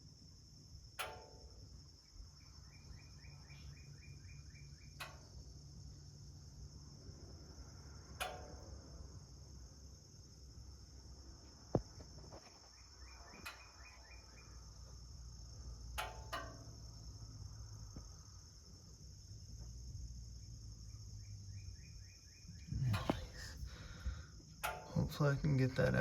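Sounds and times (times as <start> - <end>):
crickets chirring: 0.0 - 26.0
sharp click: 1.0 - 1.4, 16.0 - 16.6, 22.9 - 23.7, 24.6 - 25.1.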